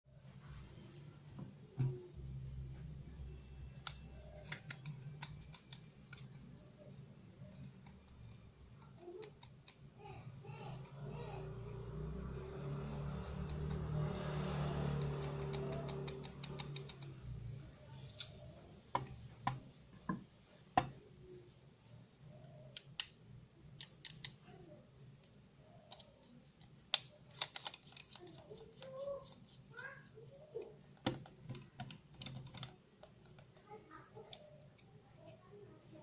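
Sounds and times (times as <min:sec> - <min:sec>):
tools clicking and tapping: 0:03.7 - 0:06.9, 0:14.7 - 0:21.0, 0:22.7 - 0:24.4, 0:30.9 - 0:35.4.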